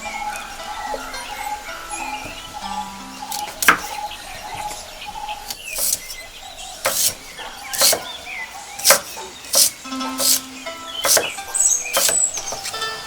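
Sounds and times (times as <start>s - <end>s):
birds chirping: 0.0s - 13.0s
faint background music: 0.0s - 13.0s.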